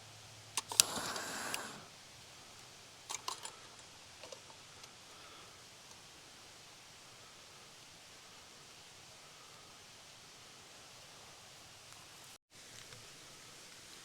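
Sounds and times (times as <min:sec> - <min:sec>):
sharp clicks: 0:00.6 - 0:01.9.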